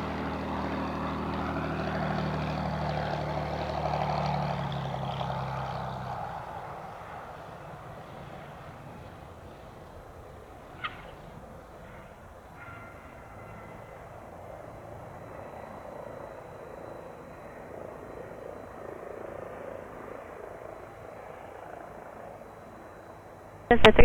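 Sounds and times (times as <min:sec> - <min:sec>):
distant propeller airplane rumble: 0:00.0 - 0:24.0
brief sharp sound: 0:23.7 - 0:24.0.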